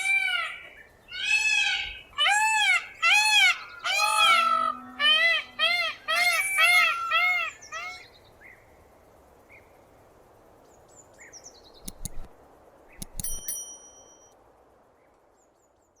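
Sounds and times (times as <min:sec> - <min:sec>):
bell-like ringing tone: 0:13.1 - 0:14.3.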